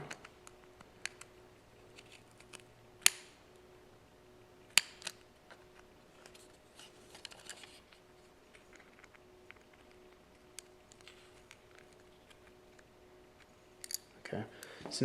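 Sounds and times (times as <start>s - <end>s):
metal tool clicking and scraping: 13.8s - 14.1s.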